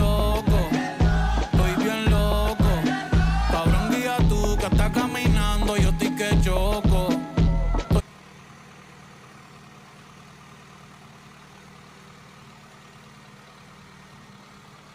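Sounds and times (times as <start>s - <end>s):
music with rapped vocals: 0.0s - 8.0s
car engine idling: 0.0s - 14.9s.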